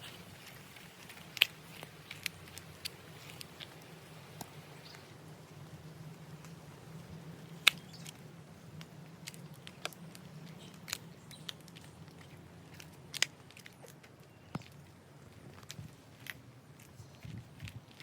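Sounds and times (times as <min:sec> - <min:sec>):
footsteps crunching on loose ground: 0:00.0 - 0:05.6.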